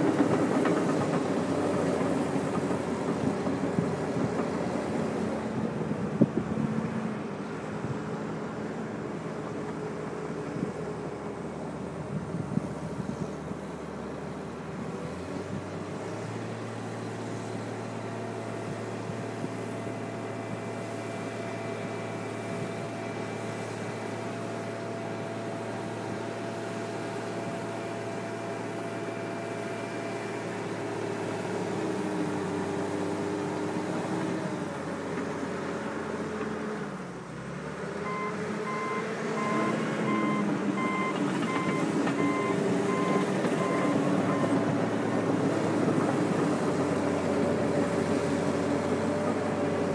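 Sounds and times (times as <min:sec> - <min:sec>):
bulldozer diesel engine running: 0:00.0 - 0:49.9
reverse alarm beeping: 0:38.1 - 0:44.5.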